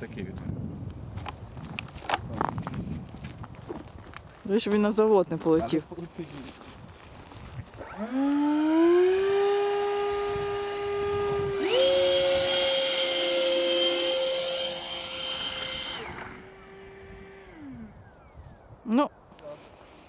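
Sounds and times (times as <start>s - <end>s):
electric fan motor whine: 7.7s - 18.6s
higher motor whine: 7.8s - 18.2s.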